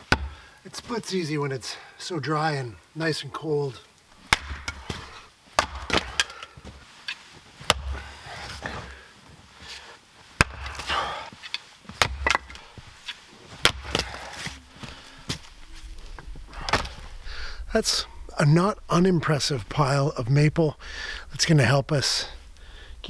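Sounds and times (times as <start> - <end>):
axe chopping firewood: 0.0 - 0.5, 4.2 - 6.6, 7.6 - 9.0, 10.4 - 11.2, 11.9 - 17.2
wood splitting and rustling: 4.1 - 9.8, 10.4 - 17.6.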